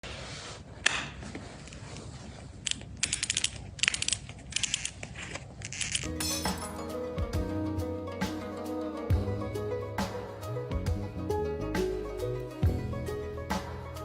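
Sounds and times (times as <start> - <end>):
joints cracking: 2.6 - 6.8
music: 6.1 - 14.0.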